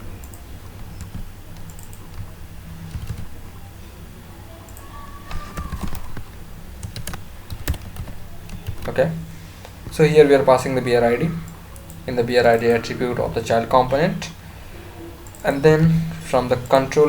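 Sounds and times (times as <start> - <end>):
steady low hum: 6.0 - 17.0.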